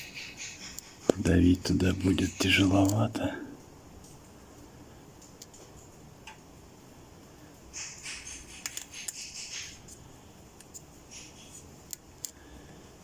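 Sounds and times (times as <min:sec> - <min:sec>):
hands rustling with tools: 0:07.7 - 0:12.4.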